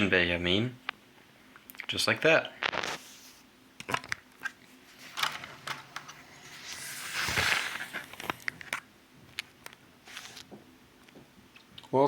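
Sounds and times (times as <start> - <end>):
rustling scrape: 4.7 - 8.8.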